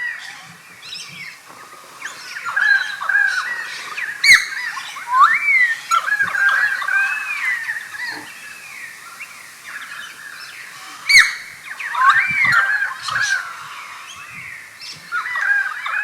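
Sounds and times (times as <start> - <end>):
bird whistled warbling calls: 2.4 - 13.9.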